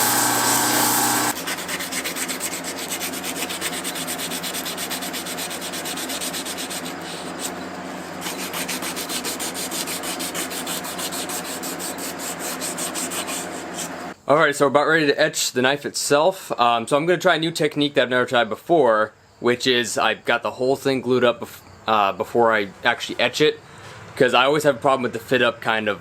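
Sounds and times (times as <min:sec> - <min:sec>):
motor running: 0:00.0 - 0:01.7
hand sanding strokes: 0:00.0 - 0:14.2.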